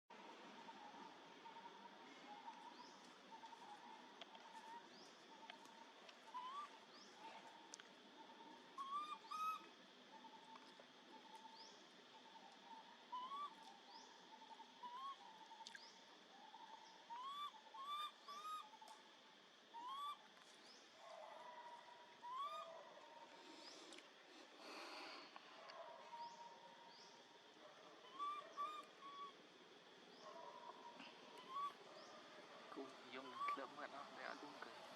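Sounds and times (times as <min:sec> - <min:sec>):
baby monkey crying: 0:31.4 - 0:31.8, 0:33.3 - 0:33.6.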